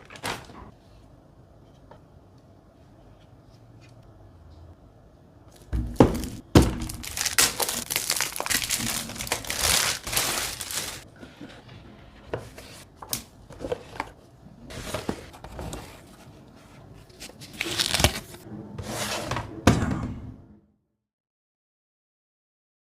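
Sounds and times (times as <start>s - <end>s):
plastic and cardboard crinkling: 0.0s - 0.7s, 5.5s - 11.1s, 12.3s - 18.4s.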